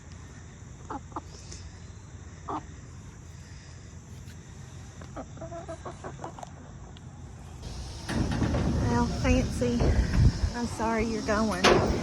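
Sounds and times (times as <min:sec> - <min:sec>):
chickens squawking: 0:05.0 - 0:06.7
low rumble: 0:07.7 - 0:12.0.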